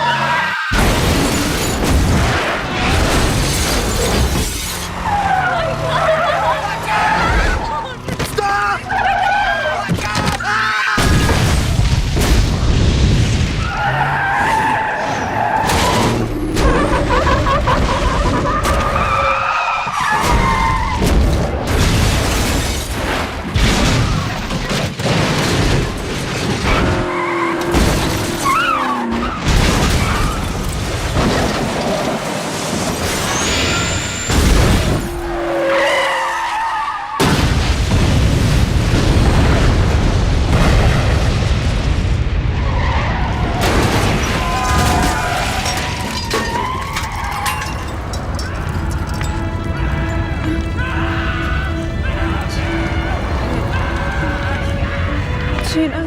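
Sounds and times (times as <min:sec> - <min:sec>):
tyres skidding: 0:00.0 - 0:11.0, 0:13.4 - 0:37.3, 0:42.6 - 0:56.0
heavy crash impacts and booms: 0:00.7 - 0:04.6, 0:11.0 - 0:13.6, 0:20.1 - 0:27.0, 0:29.3 - 0:35.1, 0:37.2 - 0:49.6
glass shattering: 0:00.7 - 0:04.9, 0:43.6 - 0:49.7.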